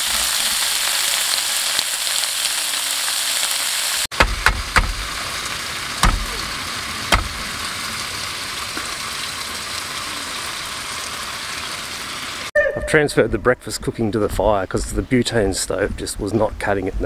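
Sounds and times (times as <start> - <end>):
food sizzling in a pan: 0.0 - 12.5
sharp pops and crackles: 4.1 - 5.3, 6.0 - 6.5, 7.1 - 7.5.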